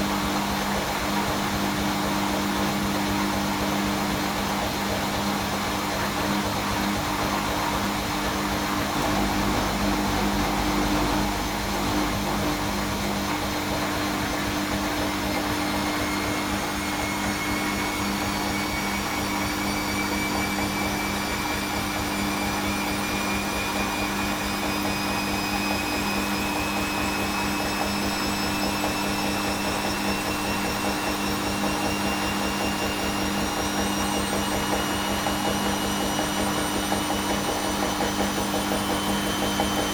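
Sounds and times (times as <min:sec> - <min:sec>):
washing machine motor whine rising: 0:00.0 - 0:39.9
low hum: 0:06.6 - 0:16.8.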